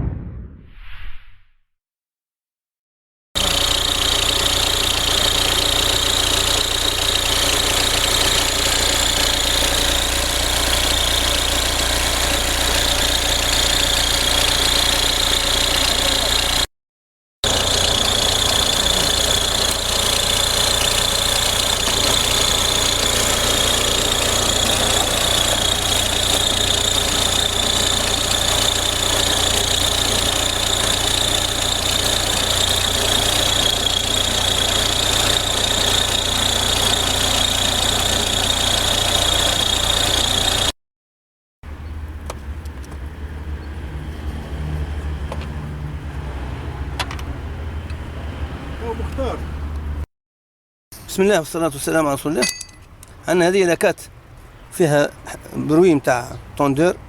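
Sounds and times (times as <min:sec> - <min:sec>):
low hum: 0:00.0 - 0:01.5
diesel engine running: 0:03.4 - 0:16.7, 0:17.4 - 0:40.7.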